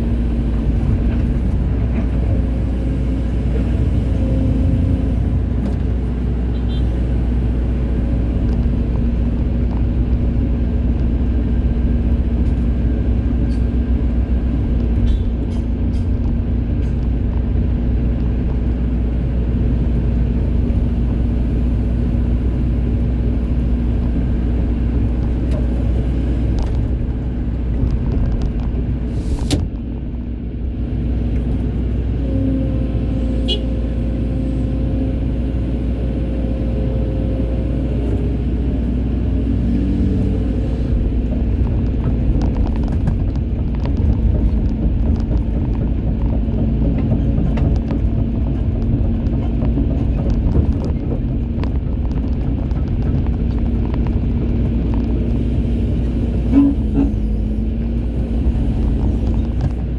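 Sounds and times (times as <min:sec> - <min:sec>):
diesel engine humming: 0:00.0 - 0:59.9
sharp clicks and knocks: 0:40.9 - 0:55.4.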